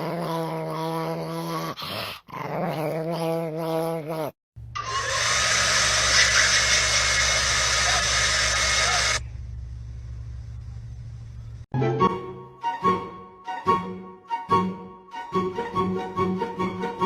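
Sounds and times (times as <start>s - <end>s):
small dog growling: 0.0s - 4.4s
low hum: 4.6s - 11.7s.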